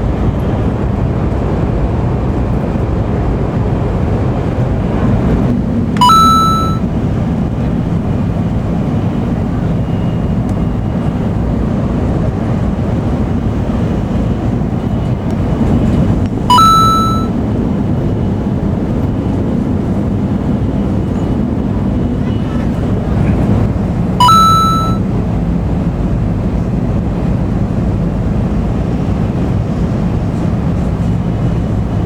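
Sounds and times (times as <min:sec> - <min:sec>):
train rumble and hiss inside cabin: 0:00.0 - 0:24.4, 0:25.0 - 0:32.0
short electronic beep: 0:06.0 - 0:06.9, 0:16.5 - 0:17.4, 0:24.2 - 0:25.0.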